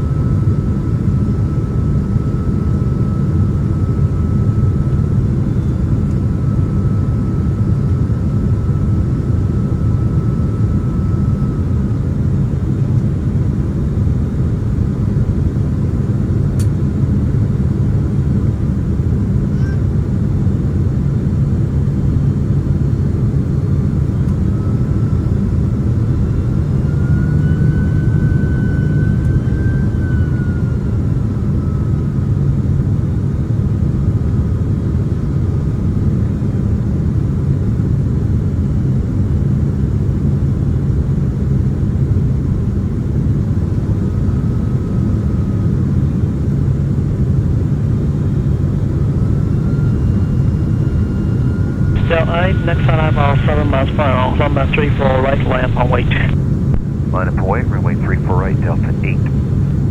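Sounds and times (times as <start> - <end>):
jet engine rumble in cabin: 0.0 - 59.9
faint thin whine: 49.4 - 56.4.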